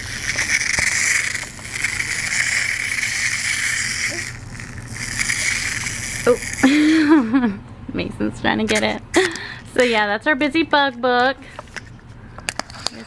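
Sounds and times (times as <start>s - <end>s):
toy spring motor whirring: 0.0s - 7.2s.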